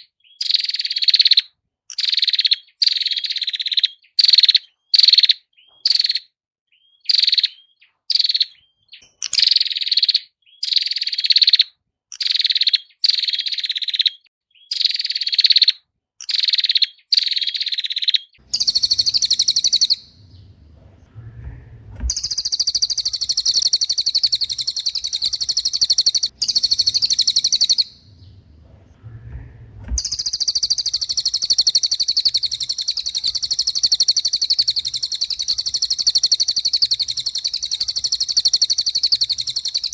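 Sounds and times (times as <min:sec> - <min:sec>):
songbird calls and trills: 0:18.5 - 0:39.9.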